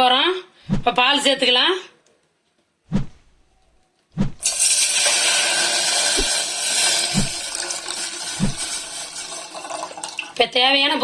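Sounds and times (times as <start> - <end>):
milk pouring into a pan: 4.4 - 10.4.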